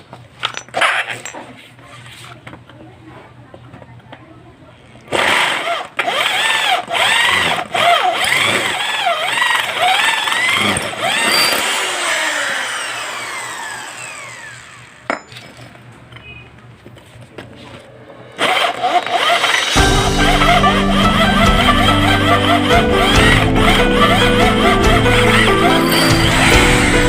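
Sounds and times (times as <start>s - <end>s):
electric hand drill whining: 5.1s - 15.1s, 18.4s - 27.0s.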